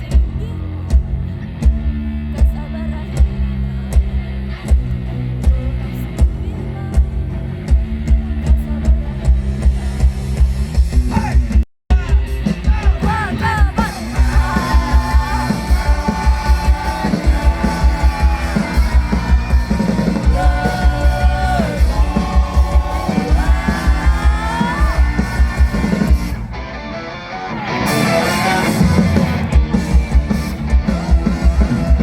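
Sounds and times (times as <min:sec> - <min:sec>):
rock music with drums and bass: 0:00.0 - 0:32.0
person singing: 0:12.7 - 0:26.1, 0:27.3 - 0:29.5.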